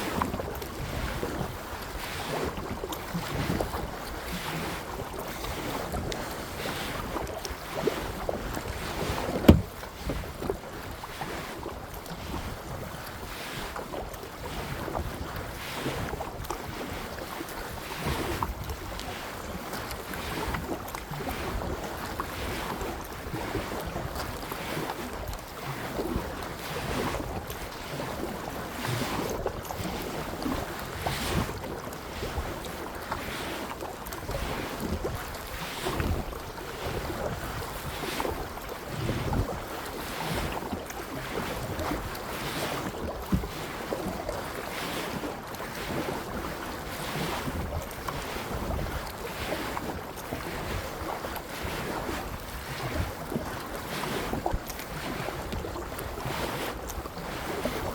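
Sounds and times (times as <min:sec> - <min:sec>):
paddle strokes splashing: 0:00.0 - 0:57.9
wind buffeting microphone: 0:07.0 - 0:11.0.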